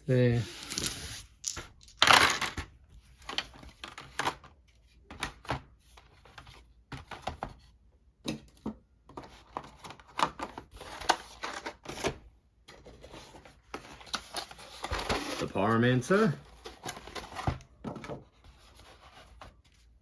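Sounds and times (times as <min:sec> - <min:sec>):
rustling scrape: 0:00.3 - 0:01.8.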